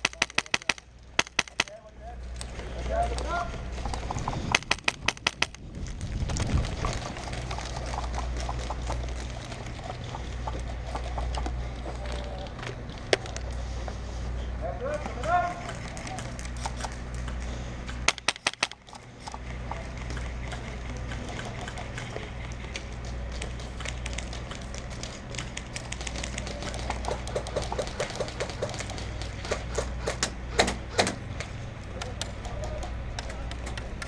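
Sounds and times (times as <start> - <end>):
airsoft gunshots: 0.0 - 1.8, 4.5 - 5.6, 18.1 - 18.8
low rumble: 2.0 - 14.5.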